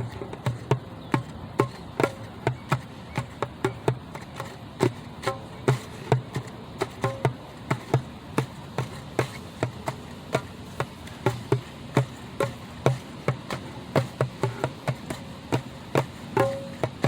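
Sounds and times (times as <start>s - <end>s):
hand drum played unevenly: 4.9s - 10.5s, 11.2s - 17.0s.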